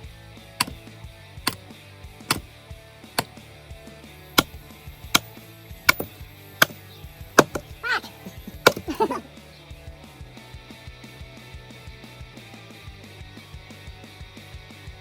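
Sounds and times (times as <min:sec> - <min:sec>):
music: 0:00.0 - 0:15.0
sharp knocks: 0:05.9 - 0:06.8, 0:07.4 - 0:09.2.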